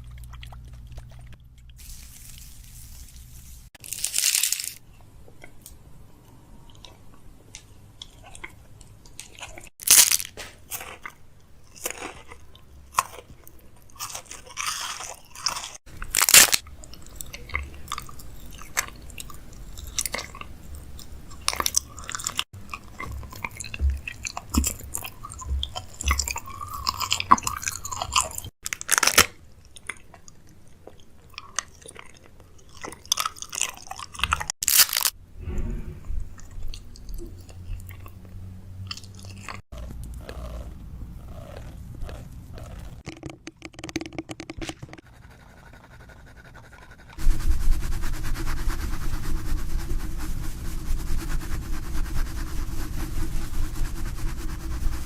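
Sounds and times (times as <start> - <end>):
crunching and chewing fries: 0.0 - 2.4, 3.8 - 4.8, 8.0 - 35.2, 38.8 - 43.1.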